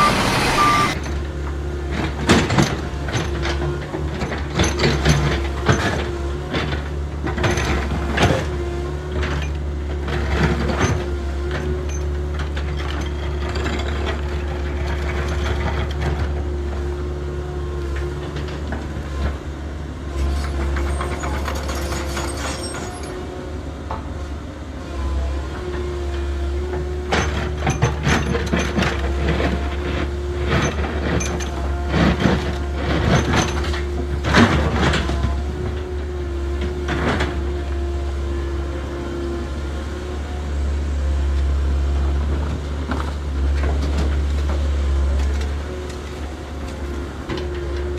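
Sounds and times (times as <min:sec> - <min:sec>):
motor and gear whine: 0:00.0 - 0:01.2.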